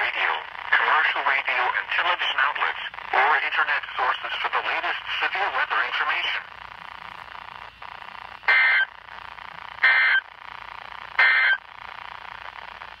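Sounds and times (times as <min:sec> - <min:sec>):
buzzy digital data bursts: 0:00.0 - 0:13.0
radio hiss: 0:00.0 - 0:13.0.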